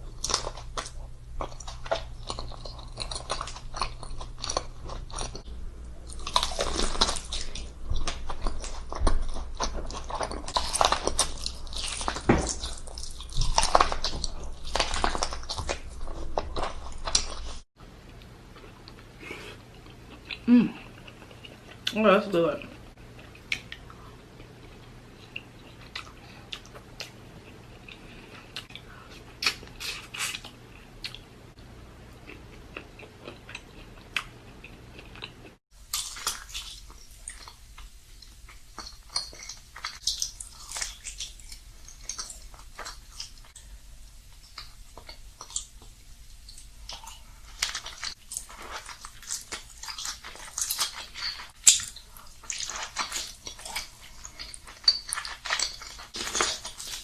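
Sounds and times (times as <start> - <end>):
chewing and biting: 0.1 - 5.5, 6.1 - 17.6, 32.2 - 43.6, 44.4 - 57.0.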